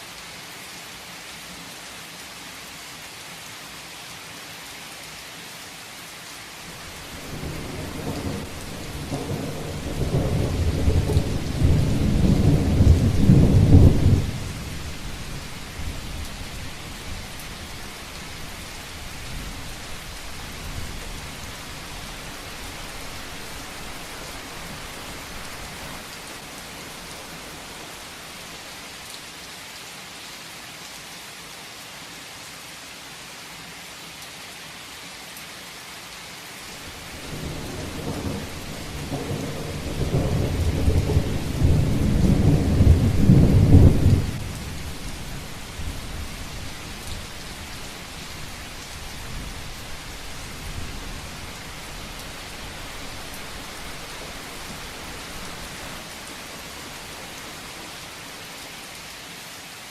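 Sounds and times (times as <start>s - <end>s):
heavy rain: 0.0s - 59.9s
thunder rumble: 7.0s - 17.4s, 36.9s - 48.5s.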